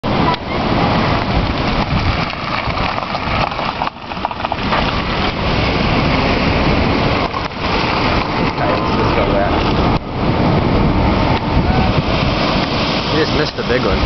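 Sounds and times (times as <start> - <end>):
heavy surf: 0.0 - 14.0
storm wind: 0.0 - 14.0
wind buffeting microphone: 0.0 - 14.0.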